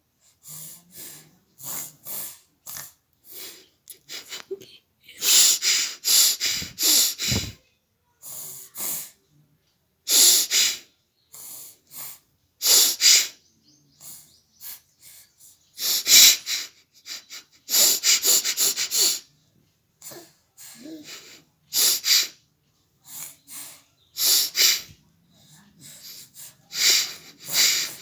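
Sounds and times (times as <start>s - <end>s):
breaths and snuffles: 0.2s - 4.6s, 5.2s - 7.6s, 10.1s - 19.3s, 20.0s - 22.4s, 23.0s - 28.0s
person sneezing: 5.2s - 7.6s, 26.8s - 28.0s.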